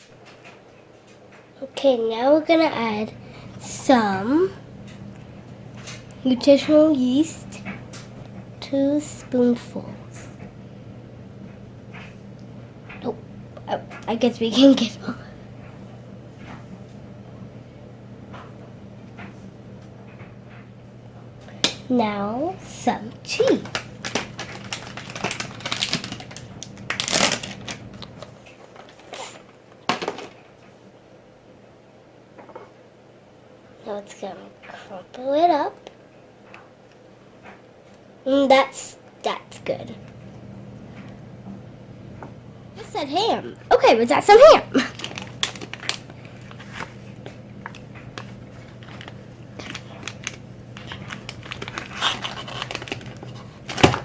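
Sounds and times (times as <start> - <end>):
steady low hum: 1.3 - 54.0
crinkly handling rustling: 22.6 - 30.6, 43.7 - 54.0.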